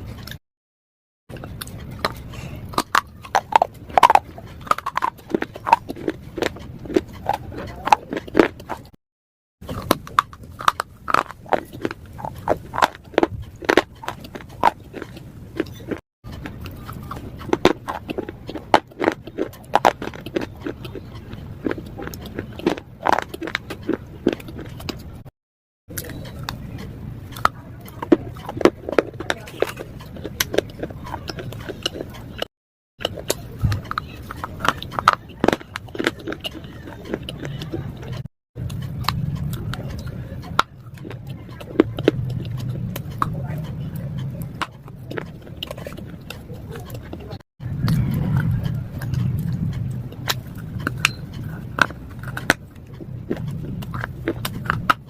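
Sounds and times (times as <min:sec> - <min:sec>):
slate being chewed crunching: 0:00.0 - 0:00.4, 0:01.3 - 0:09.0, 0:09.6 - 0:25.3, 0:25.9 - 0:55.0.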